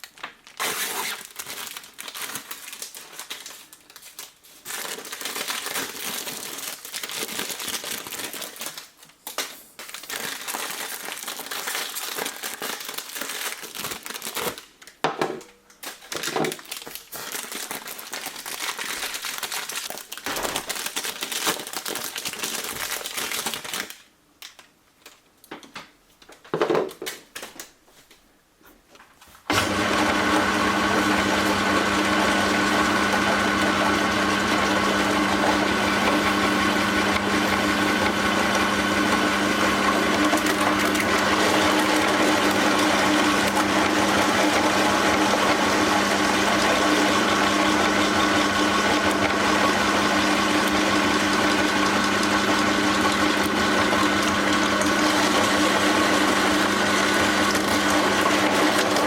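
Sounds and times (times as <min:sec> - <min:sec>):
crinkling handling noises: 0:00.0 - 0:29.5
electric meat grinder humming: 0:29.5 - 0:59.0.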